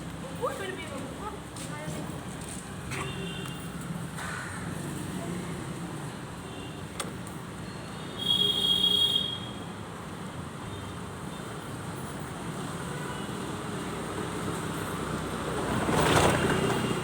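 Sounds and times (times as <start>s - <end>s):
street traffic: 0.0s - 17.0s.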